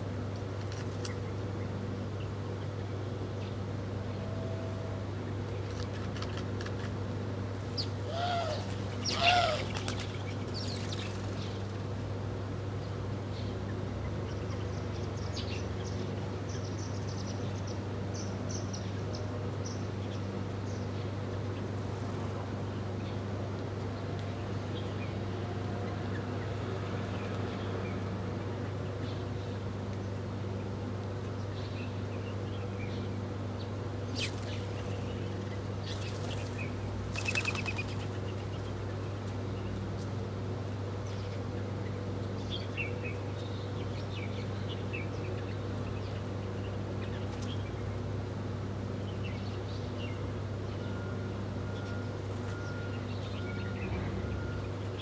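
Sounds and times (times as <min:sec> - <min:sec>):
small birds chirping: 0:07.6 - 0:11.9, 0:34.1 - 0:39.0.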